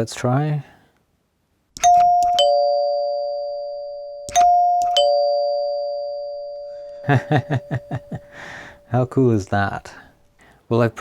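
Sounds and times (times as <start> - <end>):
electric door chime ding-dong: 1.8 - 9.6.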